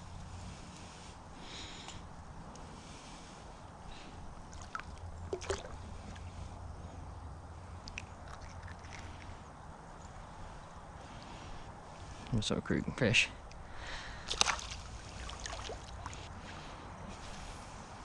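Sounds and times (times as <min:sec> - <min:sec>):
low steady rumble: 0:00.0 - 0:18.0
creek water sloshing and gurgling: 0:04.3 - 0:06.4, 0:07.7 - 0:09.5, 0:14.2 - 0:17.2.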